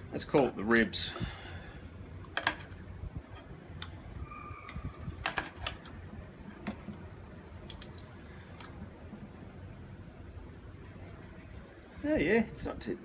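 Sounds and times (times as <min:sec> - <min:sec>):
brief squeak: 0:04.2 - 0:05.0.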